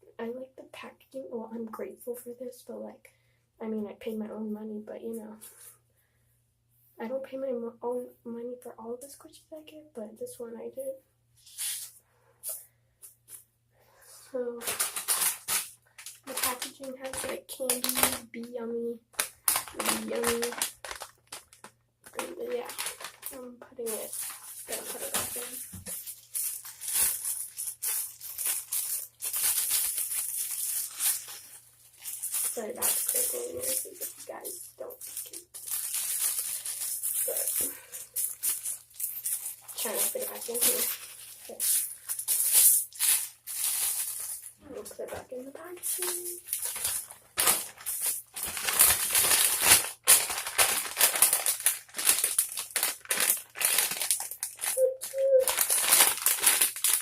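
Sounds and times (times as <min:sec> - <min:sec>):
plastic packaging crinkling: 0:14.6 - 0:57.0.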